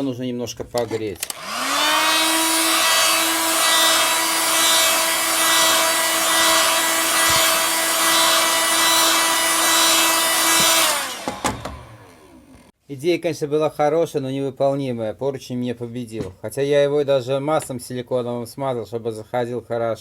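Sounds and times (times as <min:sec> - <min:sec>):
hot-air blower running: 0:01.3 - 0:12.7.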